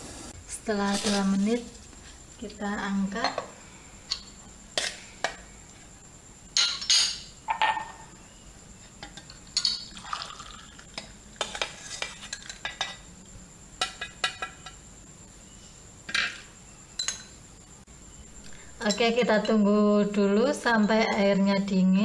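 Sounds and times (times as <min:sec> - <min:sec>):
pot and utensils clattering: 0:06.6 - 0:08.2, 0:09.0 - 0:13.1, 0:13.8 - 0:14.8, 0:16.1 - 0:17.4.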